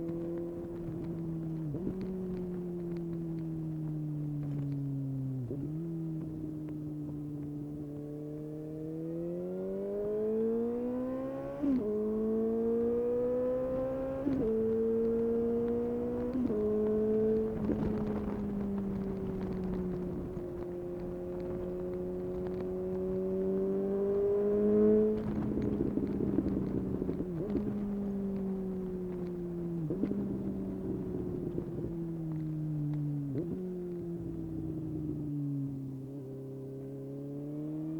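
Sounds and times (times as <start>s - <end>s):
motorcycle engine accelerating: 0.0s - 37.9s
exhaust crackles on overrun: 13.6s - 36.4s.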